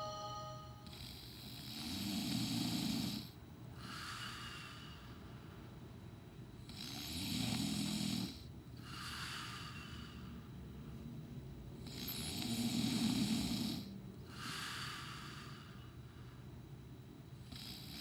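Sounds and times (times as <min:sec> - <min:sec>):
man snoring: 0:01.0 - 0:05.0, 0:06.7 - 0:10.0, 0:11.8 - 0:15.7, 0:17.5 - 0:18.0.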